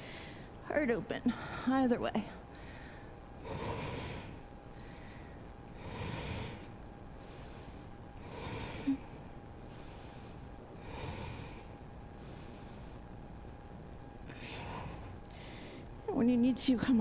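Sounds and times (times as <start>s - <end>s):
faint steady hum: 0.0s - 17.0s
person breathing deeply: 2.6s - 13.1s, 14.3s - 15.9s.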